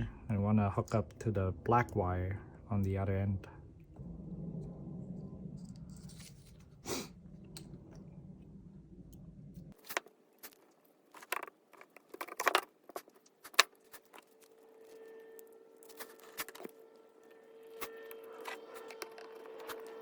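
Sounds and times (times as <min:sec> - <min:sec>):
low steady hum: 0:00.0 - 0:20.0
small metallic clicks and rattles: 0:09.8 - 0:14.6.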